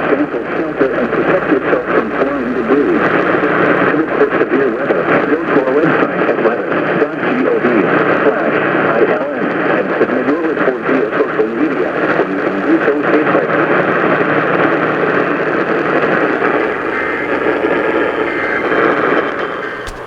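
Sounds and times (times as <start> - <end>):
faint garbled audio: 16.6 - 20.0.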